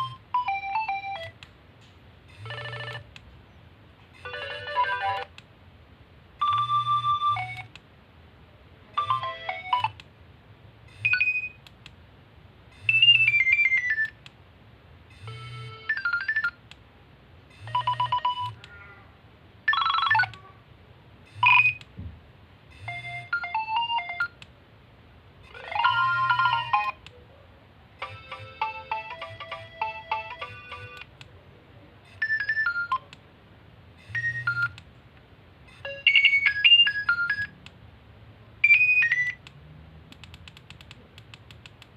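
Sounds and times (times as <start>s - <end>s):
polyphonic phone ringtones: 0.0s - 1.4s, 2.3s - 3.1s, 4.2s - 5.3s, 6.4s - 7.7s, 9.0s - 10.0s, 10.9s - 11.6s, 12.8s - 14.2s, 15.1s - 16.6s, 17.5s - 18.6s, 19.7s - 20.3s, 21.3s - 21.8s, 22.7s - 24.4s, 25.4s - 27.0s, 28.0s - 31.1s, 32.1s - 33.1s, 34.0s - 34.8s, 35.7s - 37.6s, 38.6s - 39.4s.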